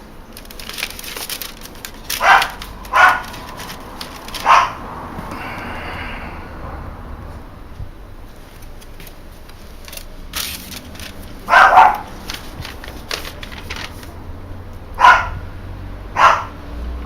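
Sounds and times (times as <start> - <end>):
faint clicks and rustling: 0.0 - 4.6, 7.8 - 14.8
dog barking: 2.2 - 3.4, 4.4 - 4.9, 11.5 - 12.2, 15.0 - 15.5, 16.1 - 16.7.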